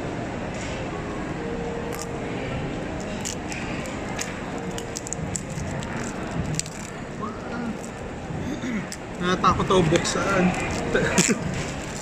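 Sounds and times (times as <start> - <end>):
background hum: 0.0 - 12.0
packaging crinkling: 3.0 - 7.0, 10.3 - 12.0.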